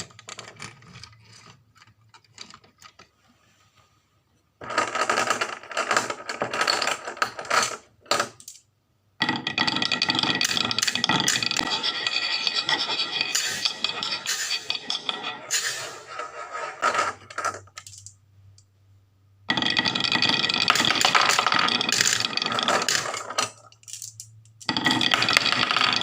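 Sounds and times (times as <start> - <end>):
marbles clattering down wooden run: 4.6 - 7.8, 9.2 - 18.1, 19.5 - 26.0.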